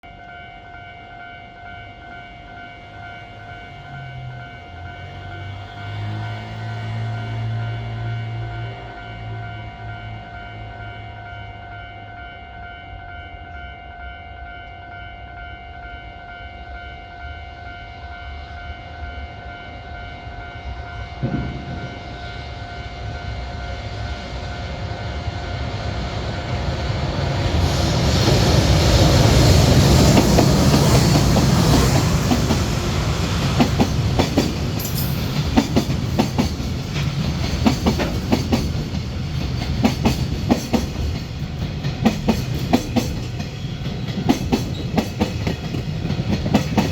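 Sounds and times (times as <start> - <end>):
freight train rumble: 0.0 - 46.9.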